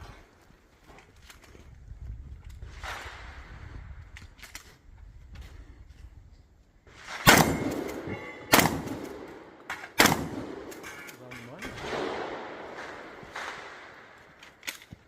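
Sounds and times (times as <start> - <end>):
shotgun shots: 7.0 - 10.9, 11.7 - 14.3.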